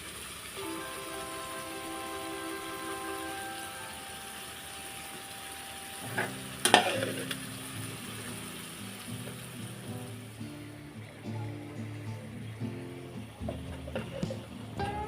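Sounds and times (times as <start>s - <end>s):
vegetables sizzling in oil: 0.0s - 10.6s
metal clank on pan: 6.2s - 7.3s.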